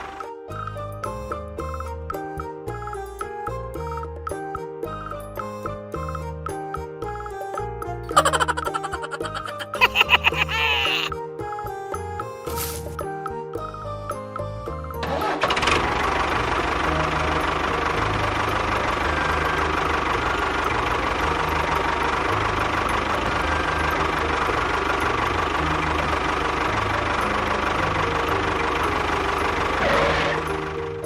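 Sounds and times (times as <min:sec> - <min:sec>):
background music with bass line: 0:00.0 - 0:15.2
motor running with rattling noise: 0:15.0 - 0:31.0.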